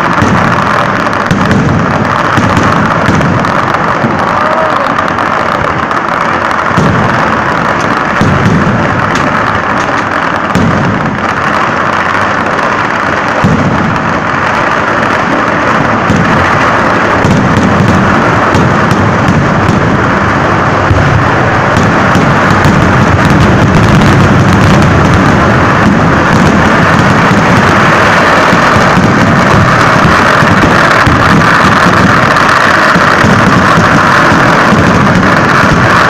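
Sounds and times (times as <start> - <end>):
firecrackers and fireworks exploding: 0.0 - 36.0.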